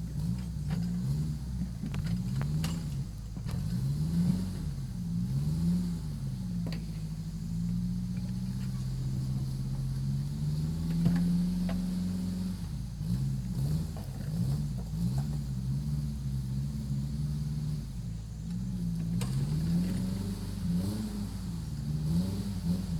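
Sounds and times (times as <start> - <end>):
vehicle engine revving: 0.0 - 22.9.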